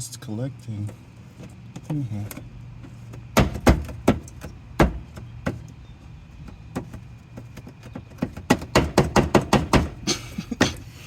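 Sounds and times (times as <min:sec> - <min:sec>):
knocks on plastic trim: 0:03.4 - 0:05.7, 0:06.4 - 0:10.0.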